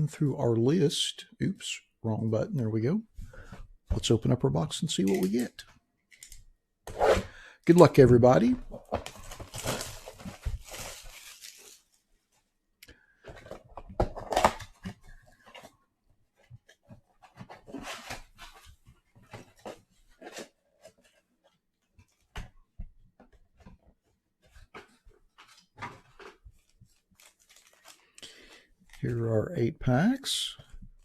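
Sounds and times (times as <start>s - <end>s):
wrapper and cardboard tearing: 9.0s - 12.0s, 25.4s - 28.2s.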